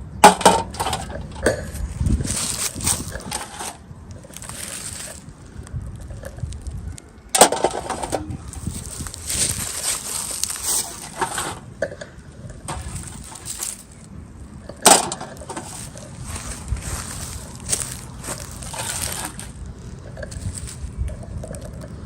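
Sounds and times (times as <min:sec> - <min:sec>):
packaging rustling and crinkling: 0:01.7 - 0:06.8, 0:08.1 - 0:11.7, 0:15.1 - 0:21.8.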